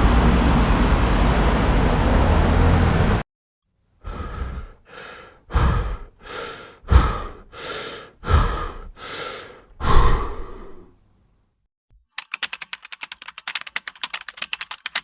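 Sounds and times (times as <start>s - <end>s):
person breathing heavily: 4.0s - 11.0s.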